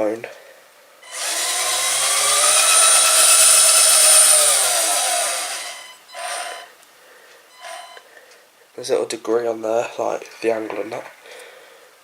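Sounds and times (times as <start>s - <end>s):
electric toy motors whining: 1.0s - 6.7s, 7.6s - 8.0s.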